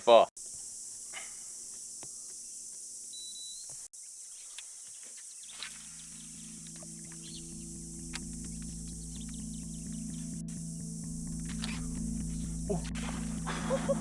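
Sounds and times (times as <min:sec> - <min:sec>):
small ticks and chirps: 0:00.1 - 0:13.5
high-pitched insect drone: 0:00.4 - 0:14.0
low steady hum: 0:05.8 - 0:14.0.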